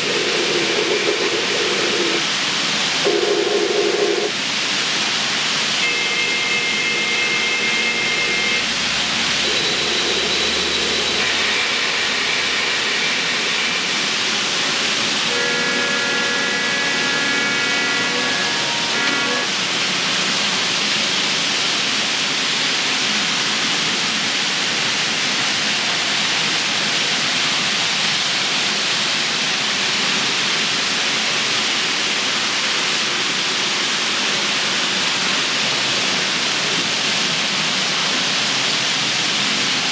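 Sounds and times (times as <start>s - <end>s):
steady hiss: 0.0s - 39.9s
train horn chords: 15.2s - 19.5s.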